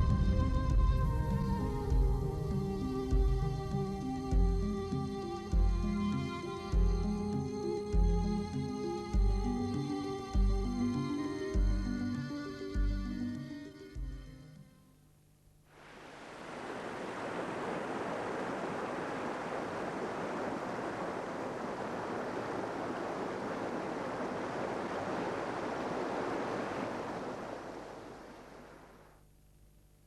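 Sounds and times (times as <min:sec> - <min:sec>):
sea surf rushing: 0:15.7 - 0:29.0.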